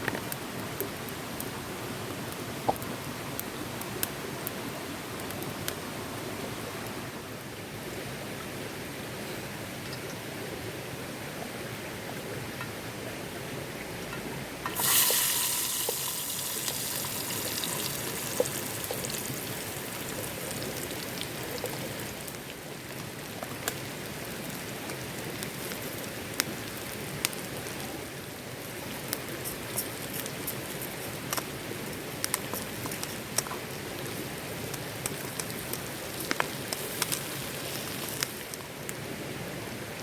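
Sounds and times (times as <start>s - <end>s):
campfire hissing: 0.2s - 7.9s, 14.6s - 39.3s
sharp fire crackles: 14.7s - 39.0s.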